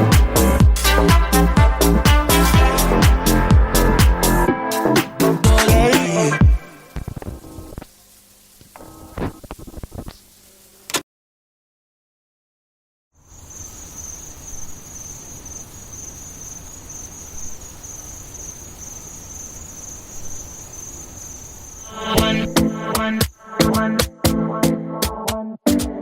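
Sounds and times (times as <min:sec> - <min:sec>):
music with a beat: 0:00.0 - 0:07.7, 0:22.2 - 0:26.0
insects chirring: 0:06.6 - 0:10.9, 0:13.2 - 0:23.6.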